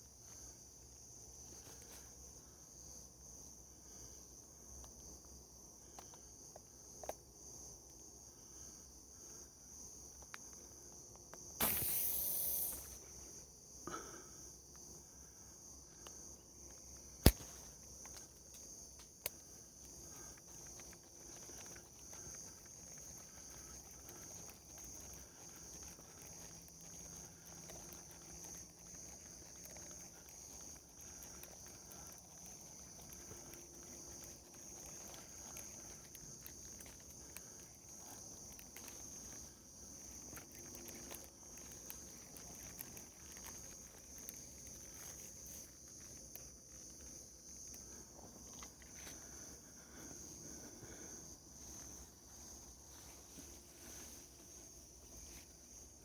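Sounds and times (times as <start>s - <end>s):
insect chorus droning: 0.0s - 56.0s
sharp loud click: 11.6s - 13.0s.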